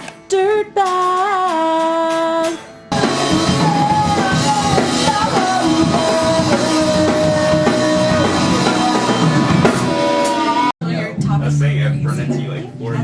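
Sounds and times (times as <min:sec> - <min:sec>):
loud rock music: 0:02.9 - 0:12.5.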